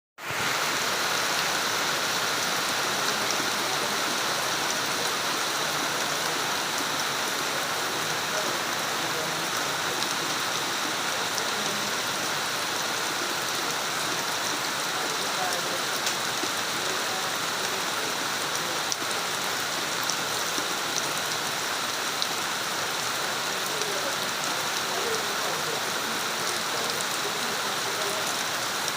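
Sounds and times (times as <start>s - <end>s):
steady rain falling: 0.2s - 28.9s.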